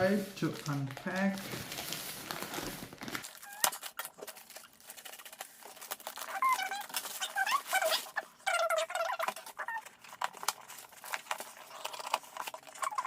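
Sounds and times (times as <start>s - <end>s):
packaging crinkling: 0.0s - 13.0s
high-pitched animal calls: 6.2s - 9.9s.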